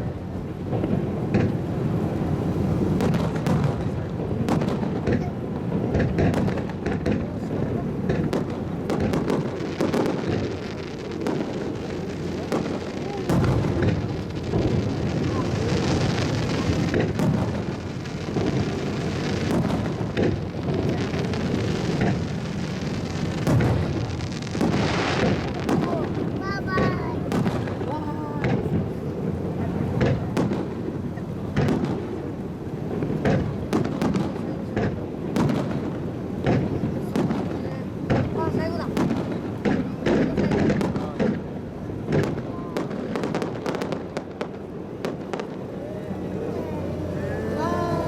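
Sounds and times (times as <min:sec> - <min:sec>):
fireworks cracks and pops: 0:00.0 - 0:46.7
fireworks exploding: 0:00.0 - 0:48.0.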